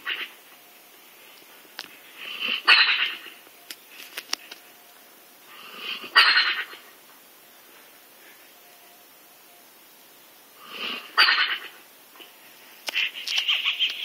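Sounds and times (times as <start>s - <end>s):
faint clicks: 12.2s - 14.0s.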